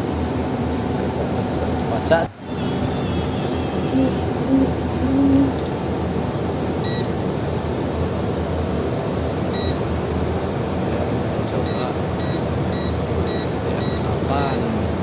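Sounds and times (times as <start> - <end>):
steady background hum: 0.0 - 15.0
keypad beeps: 6.8 - 7.2, 9.5 - 9.9, 11.6 - 14.7.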